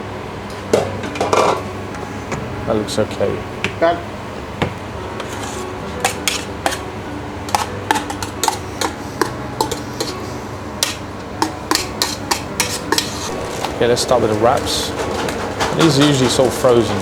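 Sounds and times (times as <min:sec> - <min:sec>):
utensils and dishes clinking: 0:00.8 - 0:01.7, 0:05.2 - 0:17.0.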